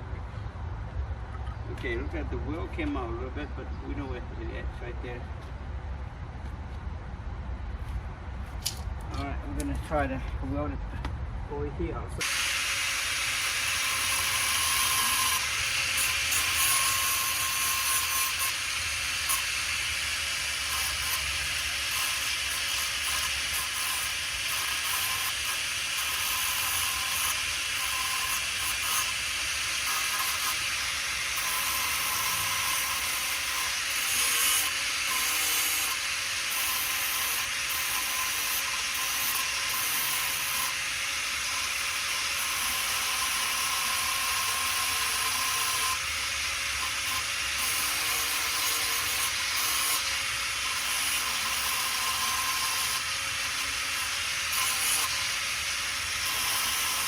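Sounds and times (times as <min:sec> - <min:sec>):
arc welder crackling and hissing: 0:12.2 - 0:57.0.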